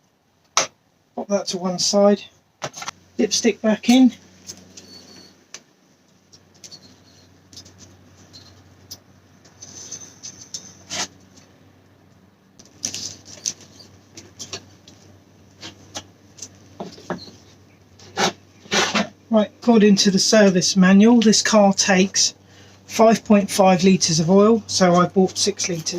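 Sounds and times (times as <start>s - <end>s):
objects handled clicking and rustling: 4.4s - 11.5s, 12.6s - 17.4s.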